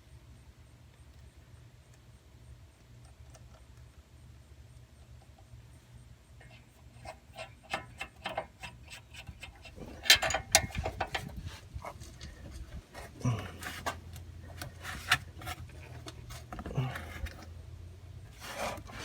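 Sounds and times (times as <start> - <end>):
tool clatter: 7.0 - 17.5.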